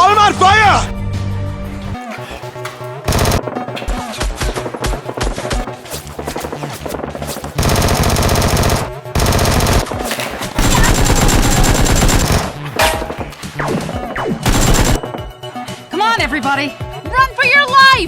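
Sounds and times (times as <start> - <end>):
automatic gunfire: 3.1 - 3.4, 7.6 - 9.9, 10.6 - 12.6, 14.5 - 15.0.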